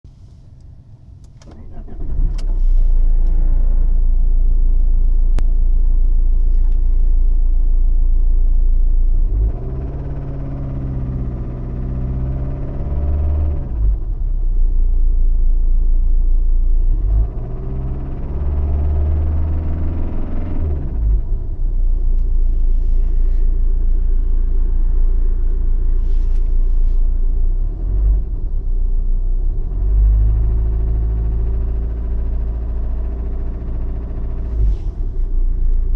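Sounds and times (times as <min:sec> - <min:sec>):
diesel engine running: 0:16.7 - 0:35.9.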